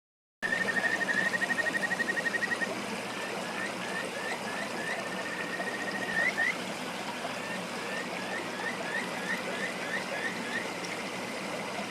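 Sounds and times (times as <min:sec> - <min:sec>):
frogs calling: 0:00.4 - 0:06.6, 0:07.4 - 0:10.8
running stream: 0:00.4 - 0:11.9.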